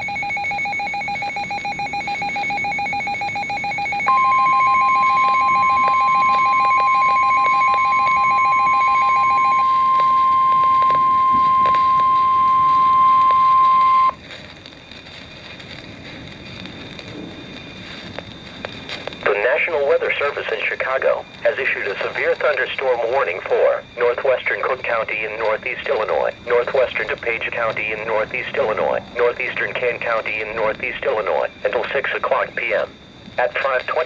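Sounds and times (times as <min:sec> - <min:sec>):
rapidly pulsing electronic beep: 0:00.0 - 0:14.2, 0:19.2 - 0:34.0
steady single-pitch attention tone: 0:00.0 - 0:14.2
faint hiss: 0:18.0 - 0:34.0.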